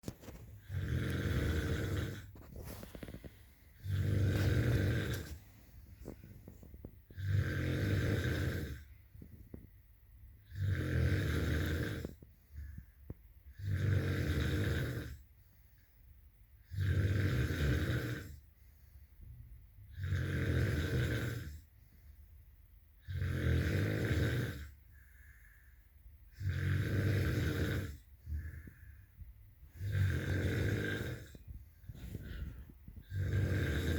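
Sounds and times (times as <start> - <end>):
quiet breathing: 0.0 - 23.2, 24.4 - 33.9
person snoring: 0.2 - 5.4, 6.0 - 8.9, 10.4 - 12.7, 13.5 - 15.2, 16.7 - 18.4, 19.9 - 21.7, 23.0 - 25.5, 26.4 - 33.9.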